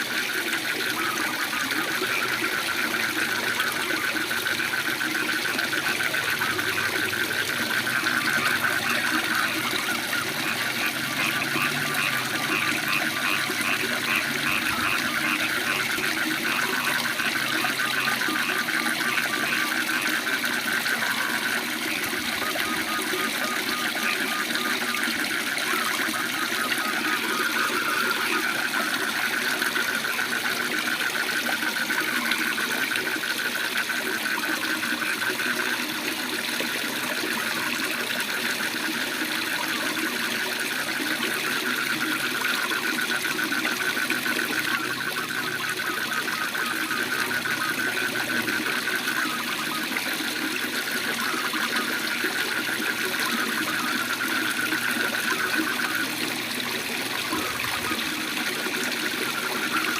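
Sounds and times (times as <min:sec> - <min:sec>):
frogs trilling: 0:00.0 - 0:59.9.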